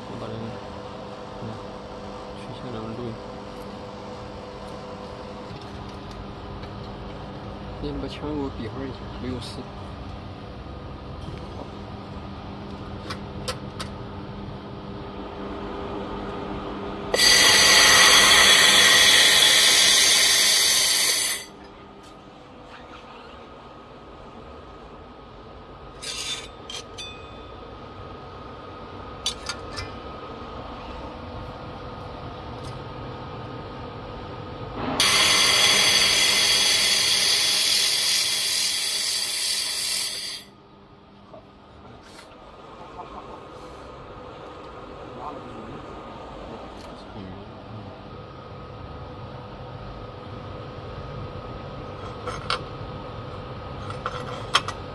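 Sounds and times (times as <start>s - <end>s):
machine humming: 14.9s - 22.5s, 33.7s - 41.2s
laser welding gun hissing: 17.2s - 21.6s, 34.9s - 40.5s.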